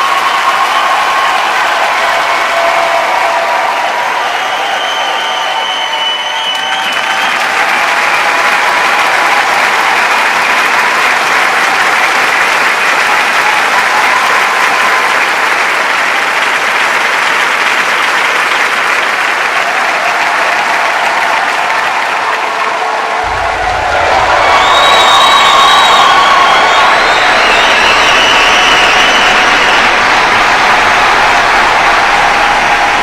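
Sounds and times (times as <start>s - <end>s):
crowd cheering and applauding: 0.0s - 33.0s.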